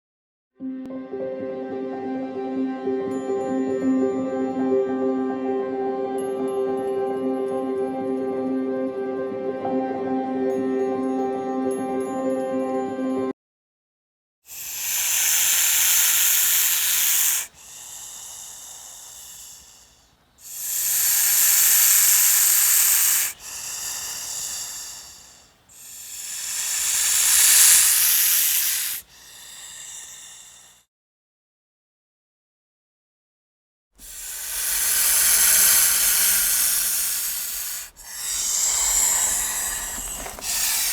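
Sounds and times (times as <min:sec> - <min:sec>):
snake hissing: 0:14.5 - 0:30.8, 0:34.0 - 0:40.9.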